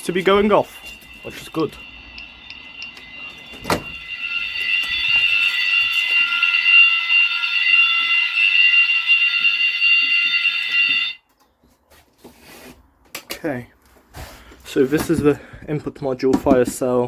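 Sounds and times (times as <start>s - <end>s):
shrill fire alarm tone: 0.0s - 11.3s.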